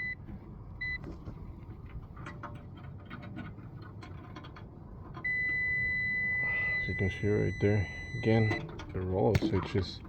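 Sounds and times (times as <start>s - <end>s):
multimeter continuity beep: 5.3s - 8.6s.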